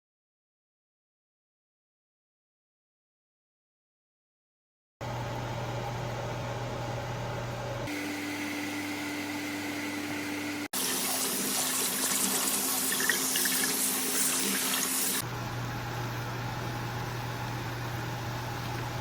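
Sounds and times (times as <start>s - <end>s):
tap water running into sink: 10.8s - 15.2s.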